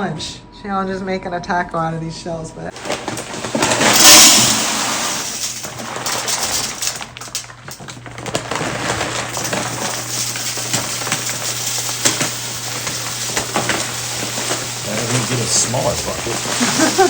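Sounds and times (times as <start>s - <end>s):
taco shells crunching: 5.6s - 17.0s.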